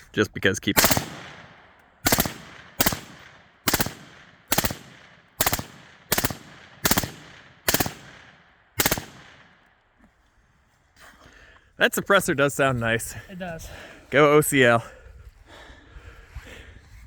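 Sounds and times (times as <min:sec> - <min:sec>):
gunshot echo: 0:00.8 - 0:09.5
suppressed rifle shots: 0:00.8 - 0:09.7.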